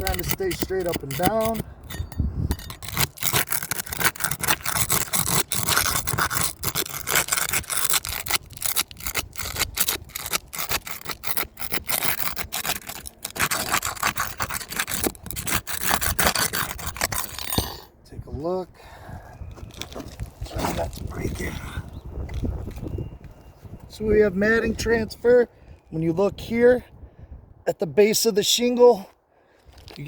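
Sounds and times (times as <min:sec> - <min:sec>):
scraping on roof shingle: 0:00.0 - 0:17.9.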